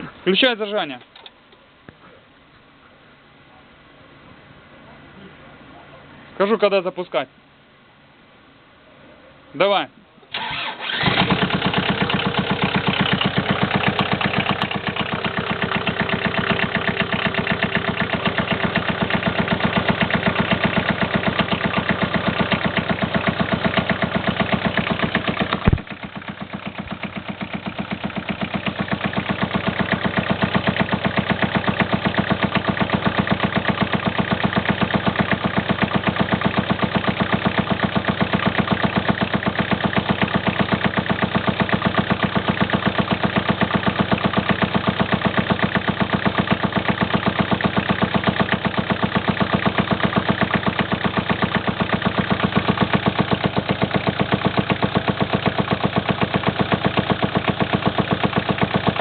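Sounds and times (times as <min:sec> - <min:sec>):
car engine idling: 0:10.3 - 0:59.0
sharp crack: 0:25.4 - 0:26.0.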